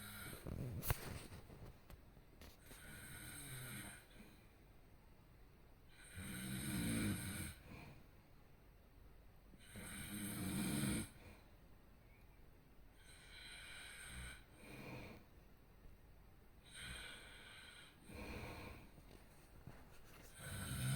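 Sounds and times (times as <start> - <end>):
person snoring: 20.3 - 20.9.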